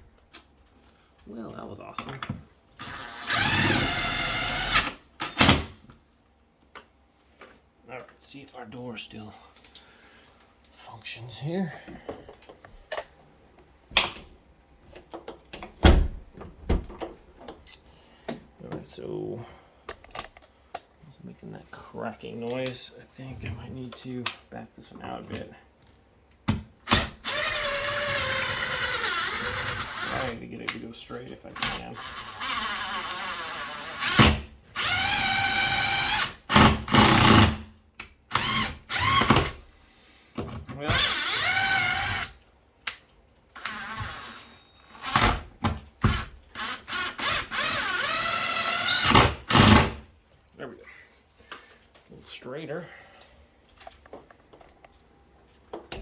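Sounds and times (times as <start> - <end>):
power drill whining: 2.8 - 5.4, 26.9 - 30.4, 31.6 - 37.6, 38.3 - 39.6, 40.9 - 42.4, 43.6 - 45.4, 46.0 - 50.0
door knocks and thuds: 15.8 - 17.1.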